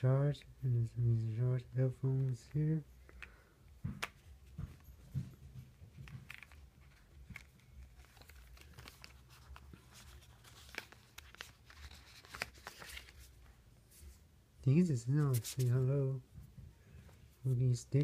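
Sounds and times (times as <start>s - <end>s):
packaging rustling and crinkling: 5.8s - 13.4s.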